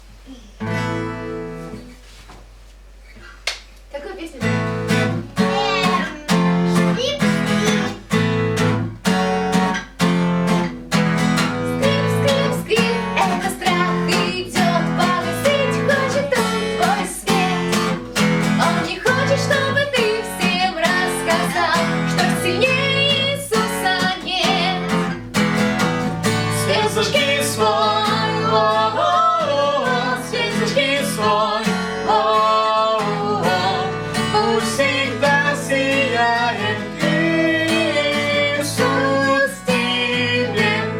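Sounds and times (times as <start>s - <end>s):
acoustic guitar strumming: 0.6s - 2.0s, 4.4s - 40.9s
person singing: 5.4s - 6.8s, 11.6s - 18.0s, 18.6s - 25.1s, 26.4s - 40.9s.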